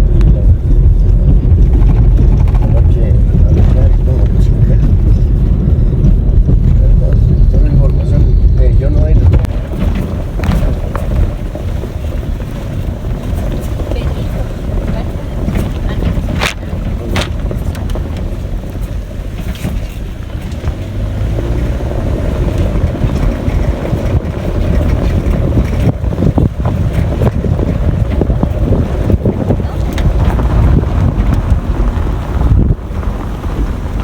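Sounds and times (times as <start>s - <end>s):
wind buffeting microphone: 0.0s - 34.0s
sharp knocks: 14.9s - 18.2s.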